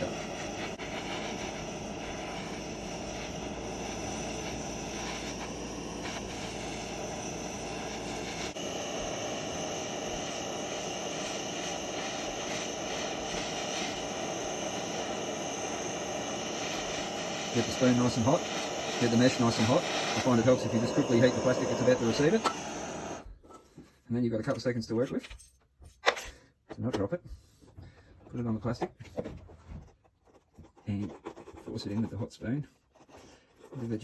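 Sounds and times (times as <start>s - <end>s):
blowtorch flame burning: 0.0s - 23.3s.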